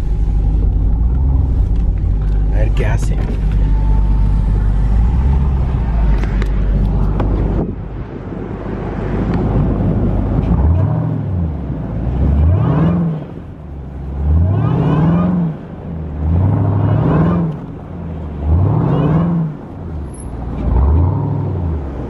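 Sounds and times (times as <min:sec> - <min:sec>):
car engine revving: 0:00.0 - 0:22.0.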